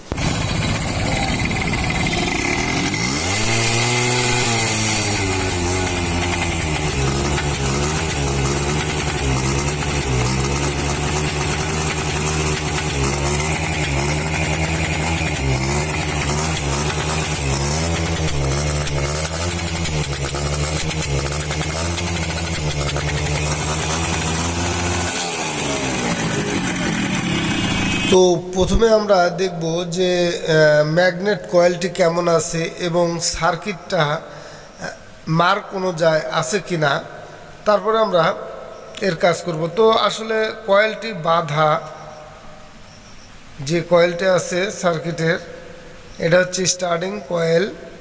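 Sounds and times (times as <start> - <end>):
motorcycle engine revving and idling: 0.0 - 28.2.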